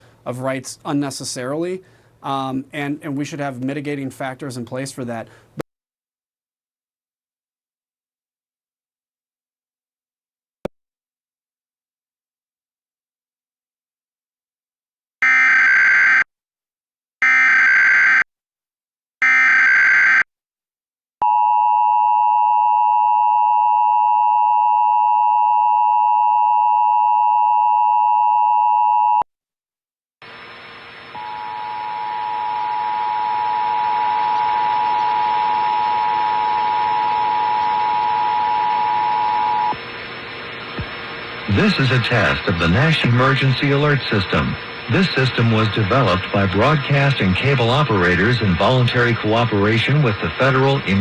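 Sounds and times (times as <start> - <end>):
screeching digital data tones: 41.5 - 51.0.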